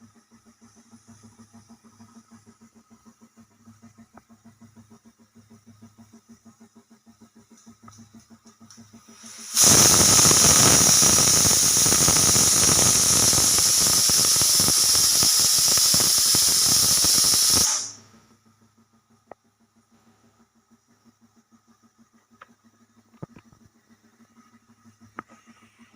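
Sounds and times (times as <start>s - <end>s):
faint rapid pulsing: 0.0s - 25.9s
pressure cooker whistle: 9.3s - 18.0s.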